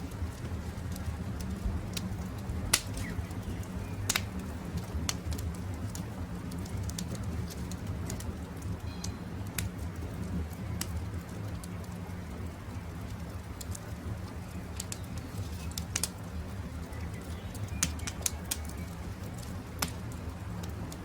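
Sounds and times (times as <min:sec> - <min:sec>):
sharp fire pops: 0:00.0 - 0:08.8, 0:14.5 - 0:16.3, 0:17.2 - 0:21.0
campfire crackling: 0:00.0 - 0:21.0
low rumble of flames: 0:00.0 - 0:21.0
faint birds calling: 0:02.8 - 0:04.6, 0:14.4 - 0:19.0.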